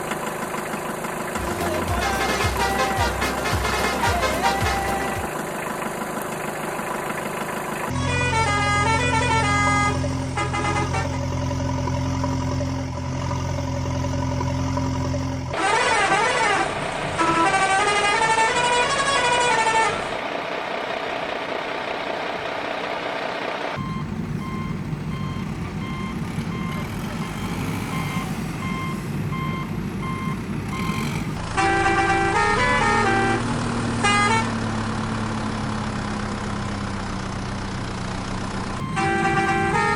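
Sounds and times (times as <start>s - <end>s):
cartoon engine hum: 0.0s - 18.5s, 23.8s - 31.4s, 38.8s - 39.9s
truck engine rumbling: 0.0s - 39.9s
short tune: 1.4s - 5.3s, 38.8s - 39.9s
reversing alarm beeping: 23.8s - 31.4s, 38.8s - 39.9s.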